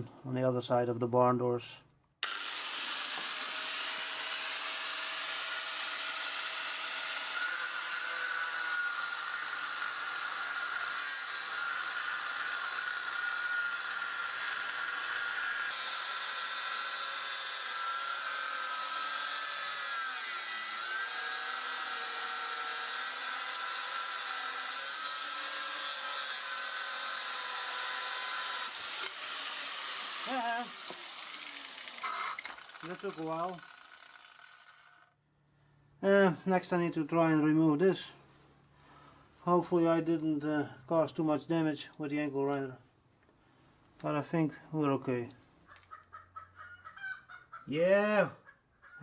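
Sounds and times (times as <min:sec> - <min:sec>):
angle grinder cutting metal: 0:02.2 - 0:35.1.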